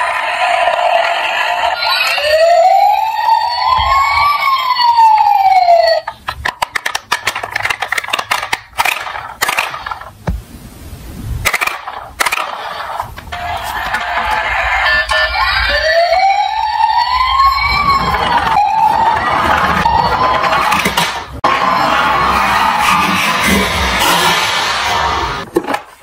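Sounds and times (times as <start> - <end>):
siren wailing: 0.0 - 6.2, 13.3 - 25.4
toy cars clattering: 5.9 - 10.2, 11.4 - 15.5, 18.2 - 22.1.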